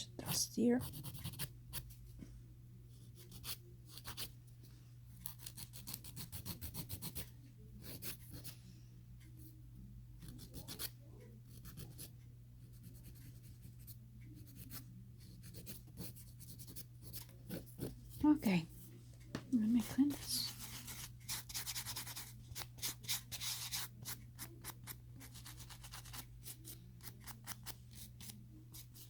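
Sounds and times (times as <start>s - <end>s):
steady low hum: 0.0s - 29.0s
nail file rasping: 5.2s - 7.2s.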